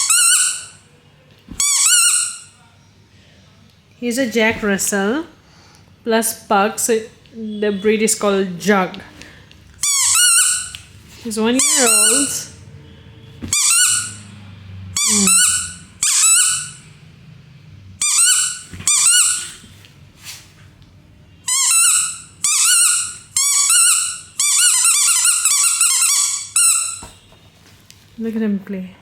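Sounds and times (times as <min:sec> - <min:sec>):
toy ball squeaking: 0:00.0 - 0:00.8, 0:01.5 - 0:02.6, 0:09.8 - 0:10.9, 0:11.5 - 0:12.6, 0:13.4 - 0:14.3, 0:15.0 - 0:16.9, 0:18.0 - 0:19.7, 0:21.5 - 0:27.3.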